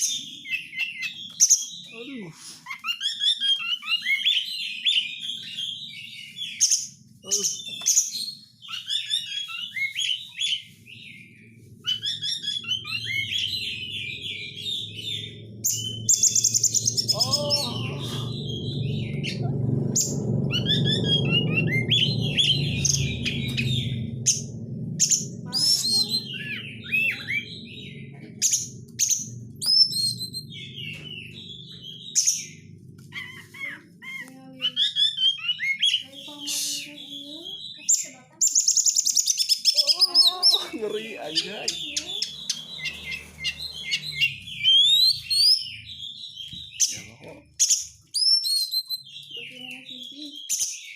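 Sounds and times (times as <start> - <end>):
bird singing chirps and whistles: 0.0 - 50.9
low rumble: 4.4 - 36.3, 40.7 - 48.1.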